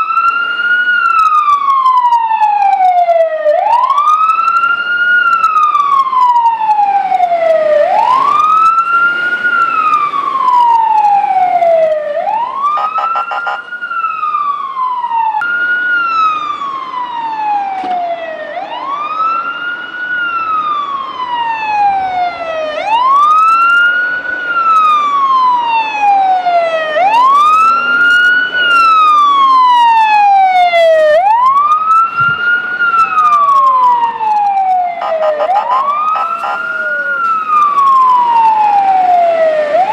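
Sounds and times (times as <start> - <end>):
fire engine siren wailing: 0.0 - 39.9.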